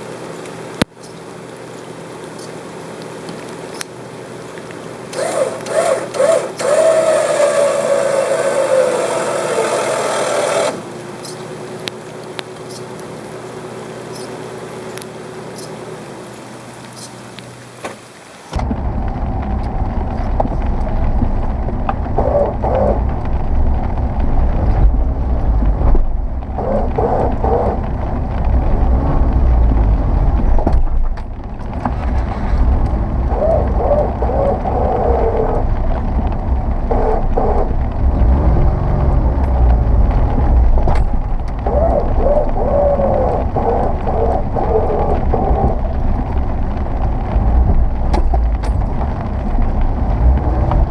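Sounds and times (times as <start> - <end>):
car engine low rumble: 0.0 - 17.8, 18.5 - 50.9
short engine whines: 5.1 - 11.0.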